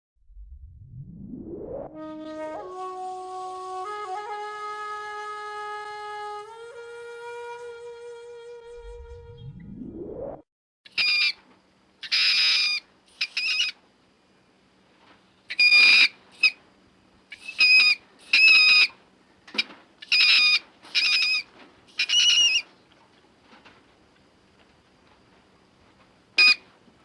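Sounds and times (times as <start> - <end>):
mink screaming: 12.0 - 13.7, 17.5 - 18.9, 20.0 - 21.4, 22.0 - 22.6.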